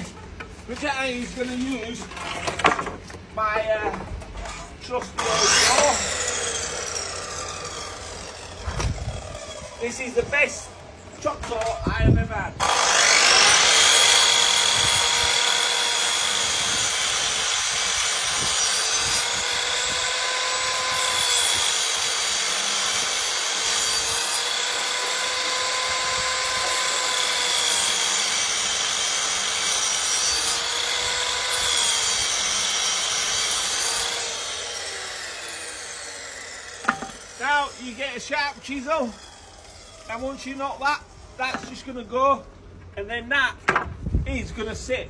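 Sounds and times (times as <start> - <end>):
chop saw cutting wood: 5.2 - 9.8, 12.6 - 40.4.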